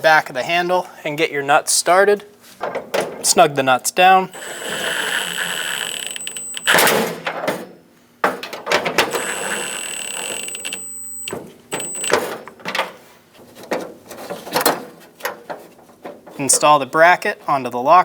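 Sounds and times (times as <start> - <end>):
power driver motor whining: 4.3 - 7.1, 8.9 - 12.3.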